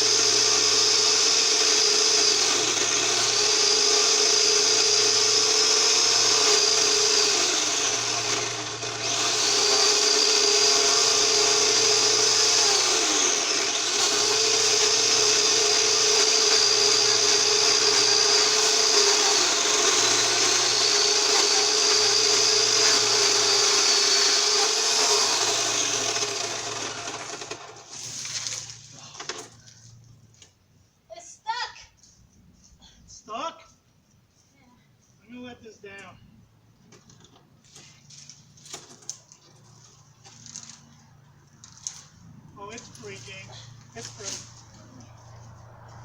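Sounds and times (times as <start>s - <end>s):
power saw running: 0.0s - 29.7s, 39.5s - 46.0s.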